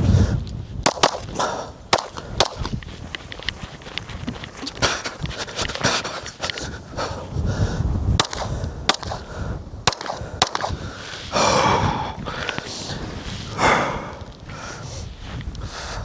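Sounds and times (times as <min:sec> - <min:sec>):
heavy breaths: 0:00.0 - 0:16.0
handgun shots: 0:00.8 - 0:02.8, 0:08.2 - 0:11.2.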